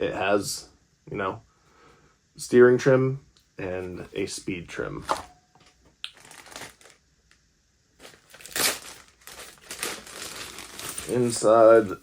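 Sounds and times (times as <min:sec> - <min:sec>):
plastic packaging crinkling: 0:05.1 - 0:07.0, 0:08.0 - 0:12.0.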